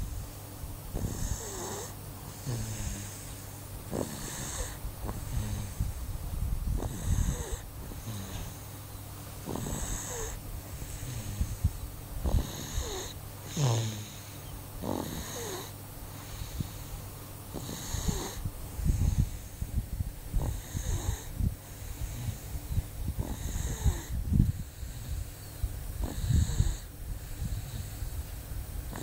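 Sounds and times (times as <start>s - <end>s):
person snoring: 1.0s - 3.3s, 3.9s - 5.9s, 6.8s - 8.6s, 9.4s - 11.6s, 12.2s - 16.8s, 17.5s - 19.4s, 23.2s - 25.2s, 26.0s - 28.1s.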